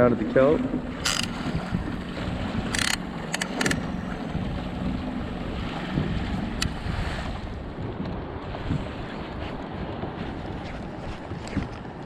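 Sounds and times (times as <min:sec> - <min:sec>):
water washing around kayak: 0:00.0 - 0:12.0
wind buffeting microphone: 0:00.0 - 0:12.0
sharp clicks: 0:01.0 - 0:01.5, 0:02.7 - 0:04.1.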